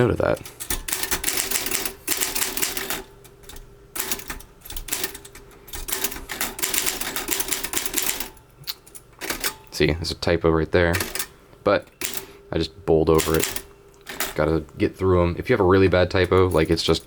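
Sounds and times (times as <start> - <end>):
typewriter keys striking: 0.4 - 8.4, 10.9 - 11.3, 13.2 - 14.4.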